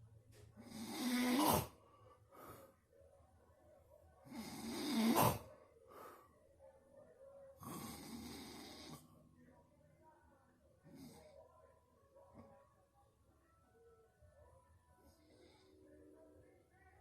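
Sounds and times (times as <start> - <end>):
person snoring loudly: 0.6 - 1.7, 4.3 - 5.4
soft breaths out: 1.8 - 2.8.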